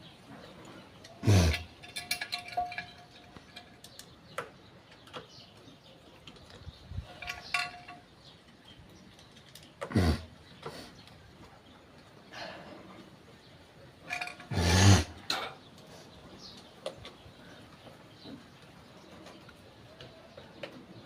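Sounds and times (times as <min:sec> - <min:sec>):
metal tools clinking: 0:00.9 - 0:05.4, 0:07.0 - 0:09.8, 0:14.0 - 0:15.6.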